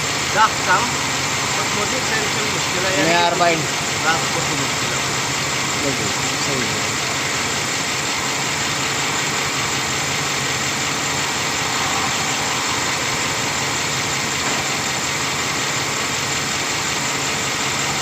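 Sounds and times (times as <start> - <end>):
engine idling roughly with misfires: 0.0 - 18.0.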